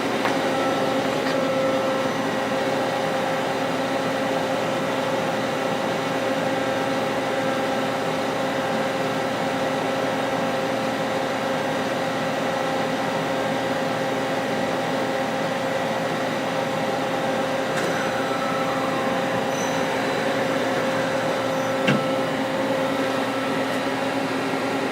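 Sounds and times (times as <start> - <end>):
lathe running with mechanical hum: 0.0 - 24.9.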